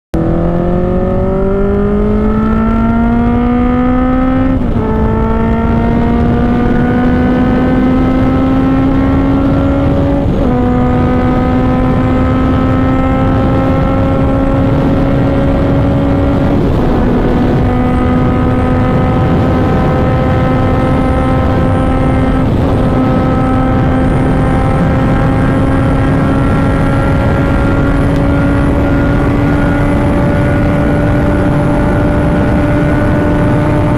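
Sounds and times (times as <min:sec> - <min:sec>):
road noise: 0:00.1 - 0:33.9
engine accelerating through gears: 0:00.2 - 0:33.9.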